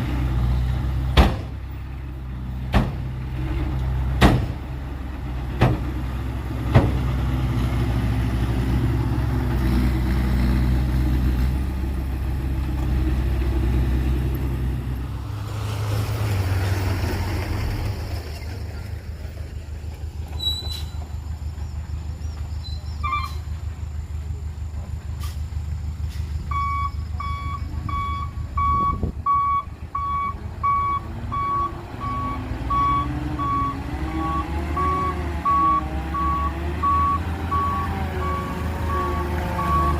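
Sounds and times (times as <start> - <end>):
diesel truck engine running: 0.0 - 39.9
reversing alarm beeping: 26.5 - 39.9.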